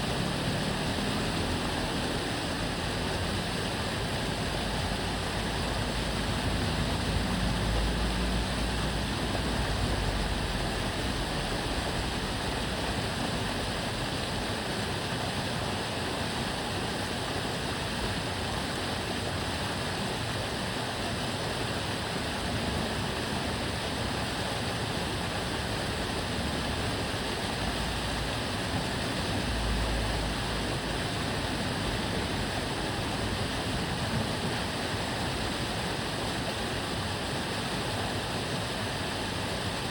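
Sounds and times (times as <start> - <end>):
low traffic rumble: 0.0 - 14.7, 22.0 - 36.2
stream water rushing: 0.0 - 39.9.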